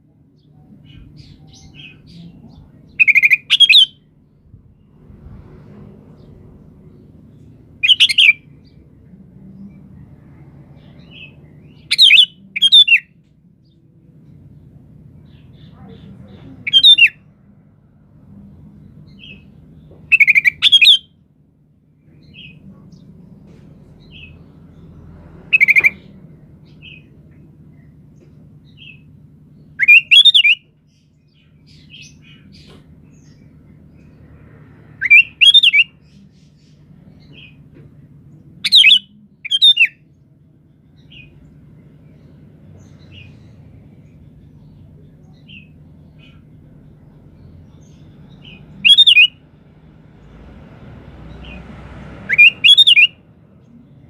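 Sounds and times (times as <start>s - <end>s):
bulbul calling: 0.9s - 4.0s, 7.8s - 8.4s, 11.2s - 13.1s, 15.9s - 17.2s, 20.0s - 21.1s, 25.5s - 26.2s, 29.8s - 30.7s, 35.0s - 36.7s, 38.6s - 40.0s, 47.8s - 49.4s, 52.3s - 53.2s.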